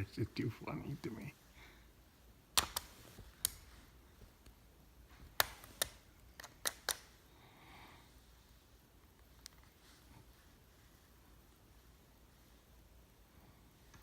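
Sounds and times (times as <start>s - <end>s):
sharp clicks and light taps: 2.6s - 3.6s, 5.2s - 7.1s.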